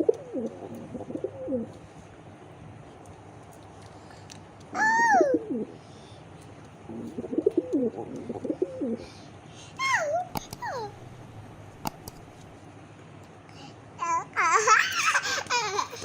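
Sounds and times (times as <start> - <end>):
pigeons cooing: 0.0 - 1.8, 4.8 - 5.8, 6.9 - 9.1.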